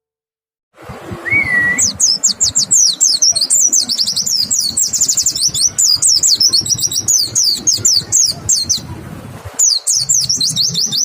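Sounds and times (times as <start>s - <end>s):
bird whistled note: 1.2s - 1.9s
bird chirping: 1.2s - 9.0s, 9.6s - 11.0s.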